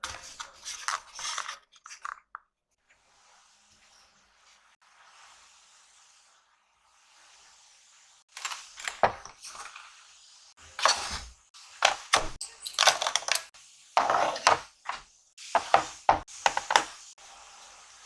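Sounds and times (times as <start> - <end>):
small objects knocking and clicking: 11.8 - 15.0, 15.6 - 17.0.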